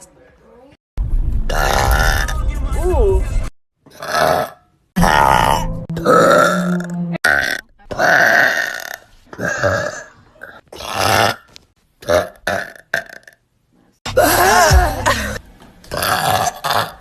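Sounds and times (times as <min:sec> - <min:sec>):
person burping: 0:01.5 - 0:02.4, 0:03.9 - 0:13.4, 0:14.1 - 0:17.0.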